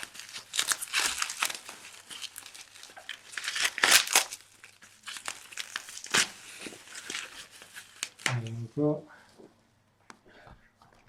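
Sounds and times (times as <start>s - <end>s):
bubble wrap crinkling: 0.0s - 8.7s.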